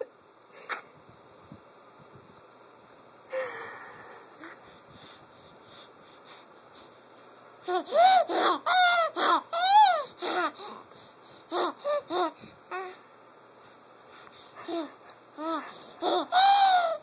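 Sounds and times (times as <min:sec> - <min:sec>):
baby laughing: 0:14.7 - 0:17.0.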